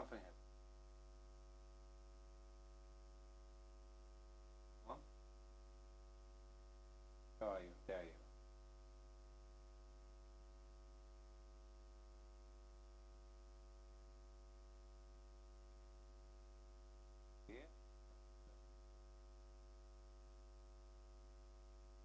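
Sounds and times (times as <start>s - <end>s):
faint vocal sound: 0.0s - 0.4s
electrical hum: 6.3s - 8.3s.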